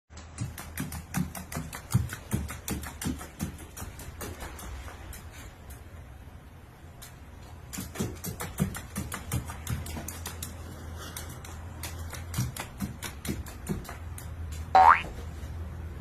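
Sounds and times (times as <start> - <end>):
rapid clicking taps: 0.1 - 5.2, 7.6 - 14.7.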